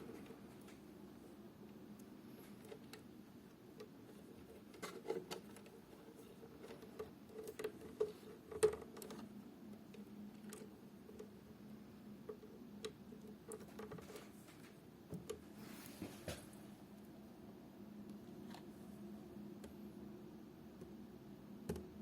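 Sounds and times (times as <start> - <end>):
steady low hum: 0.0 - 22.0
faint clicks and ticks: 1.6 - 11.5, 19.6 - 19.8.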